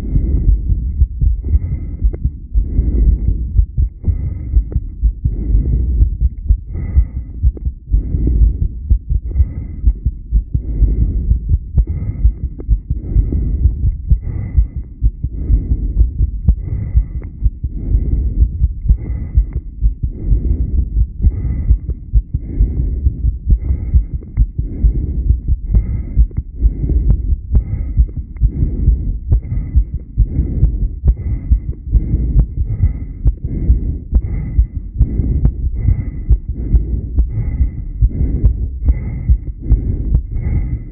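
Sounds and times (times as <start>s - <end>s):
human heartbeat: 0.0s - 40.9s.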